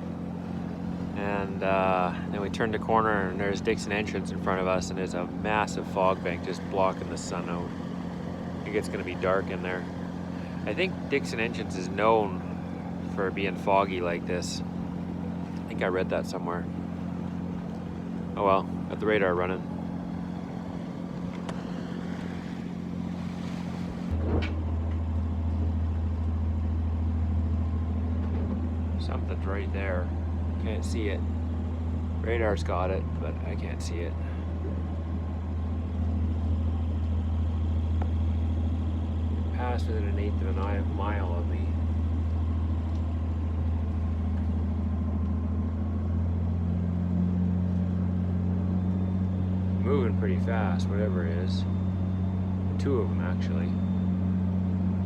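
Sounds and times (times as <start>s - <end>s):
boat engine running: 0.0s - 55.0s.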